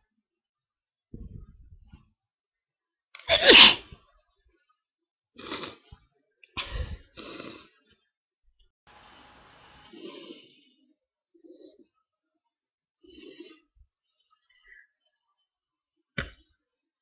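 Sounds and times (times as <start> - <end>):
person sneezing: 3.2 - 4.0.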